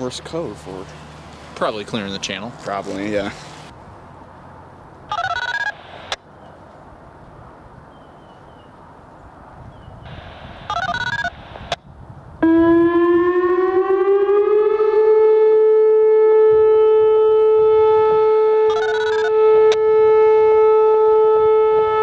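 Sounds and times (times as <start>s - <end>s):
beeping tones over radio scanner: 5.1s - 6.2s, 10.1s - 11.7s
electronic warning siren: 5.1s - 6.2s, 10.1s - 11.8s, 12.4s - 22.0s.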